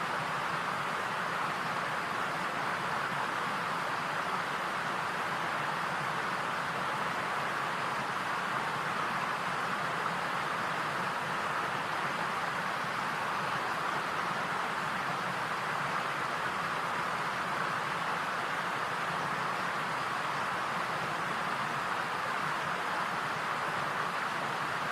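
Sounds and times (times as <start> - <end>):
steady rushing hiss: 0.0 - 24.9.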